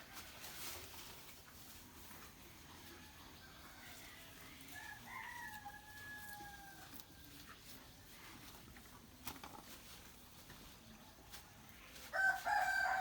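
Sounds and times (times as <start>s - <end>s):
rooster crowing: 4.8s - 6.9s, 12.1s - 13.0s.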